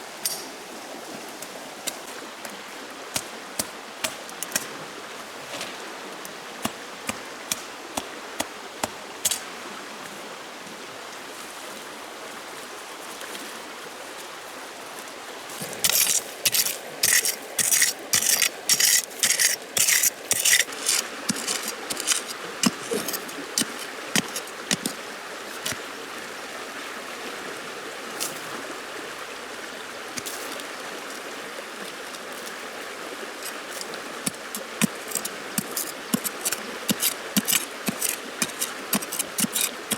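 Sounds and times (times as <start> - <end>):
rushing hiss like flowing water: 0.0 - 39.9
sharp evenly spaced strokes: 15.6 - 25.0, 33.4 - 39.9.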